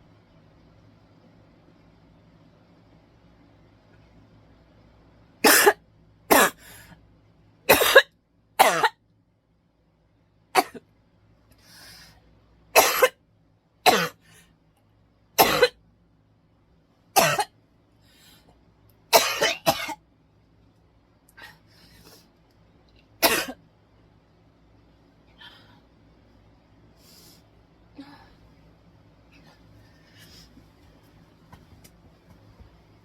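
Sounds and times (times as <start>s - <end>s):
person coughing sharply: 5.5s - 6.6s, 7.7s - 9.0s, 12.8s - 13.2s, 17.2s - 17.5s, 19.1s - 20.0s, 23.2s - 23.6s.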